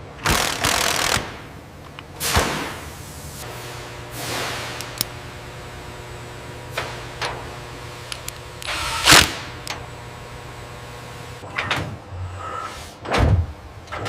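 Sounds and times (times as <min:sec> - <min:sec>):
factory machinery hum: 0:00.0 - 0:14.0
sharp machine clicks: 0:00.2 - 0:01.4.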